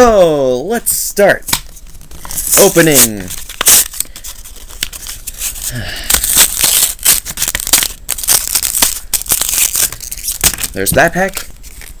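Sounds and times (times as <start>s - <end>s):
foil wrappers crinkling and tearing: 1.9s - 12.0s.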